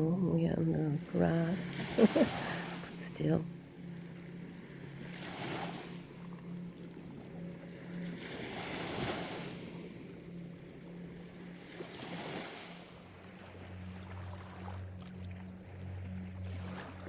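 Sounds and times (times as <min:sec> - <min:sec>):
river waves washing on shore: 0:00.0 - 0:03.6, 0:04.9 - 0:15.0
steady low hum: 0:00.0 - 0:17.0.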